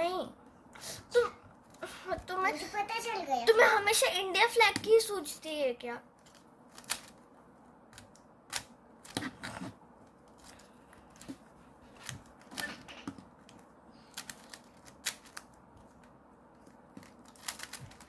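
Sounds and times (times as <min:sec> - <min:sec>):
speed cube plastic clicks: 0:06.3 - 0:07.2, 0:13.5 - 0:16.1, 0:17.0 - 0:18.0.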